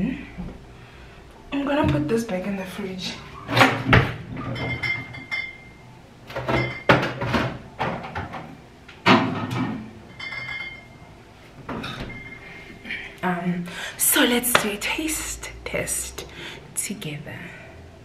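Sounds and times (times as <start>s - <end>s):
refrigerator door opening and closing: 3.4s - 5.2s, 6.2s - 10.0s, 11.6s - 12.4s
glass bottle knocks and clinks: 4.4s - 5.7s, 6.5s - 7.1s.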